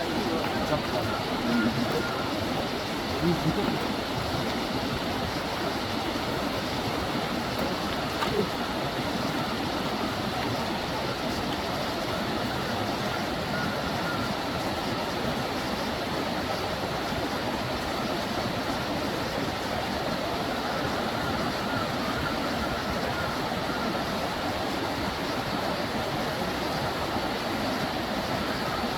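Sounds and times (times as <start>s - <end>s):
mountain stream rushing: 0.0s - 28.9s.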